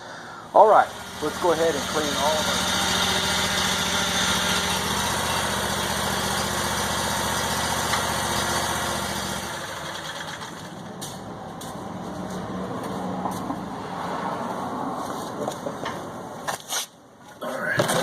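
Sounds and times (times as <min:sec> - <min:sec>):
small gasoline engine running: 0:00.6 - 0:10.9.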